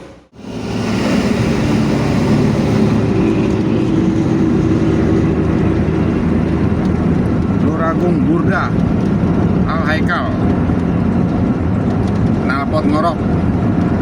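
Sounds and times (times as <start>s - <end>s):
diesel bus engine droning: 0.0s - 14.0s.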